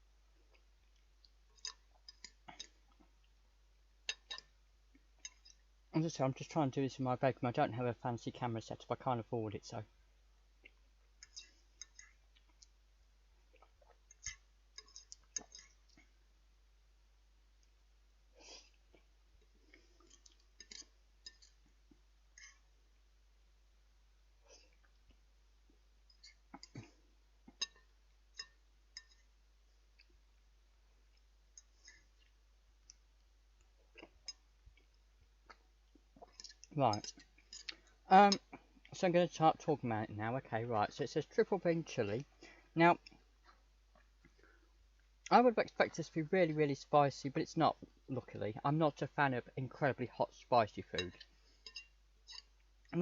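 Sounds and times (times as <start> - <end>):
cutlery clinking against a dish: 51.0 - 52.5.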